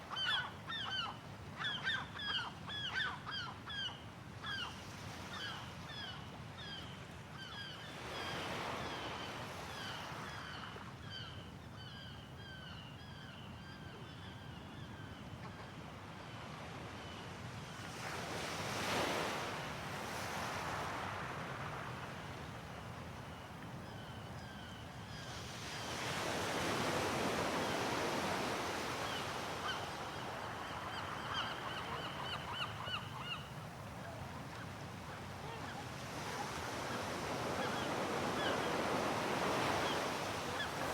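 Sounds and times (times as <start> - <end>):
gulls calling: 28.2 - 40.9.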